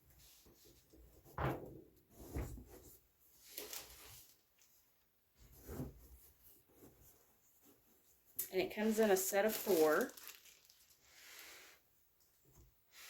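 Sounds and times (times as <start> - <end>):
fabric baskets thumping and rustling: 1.2 - 2.9.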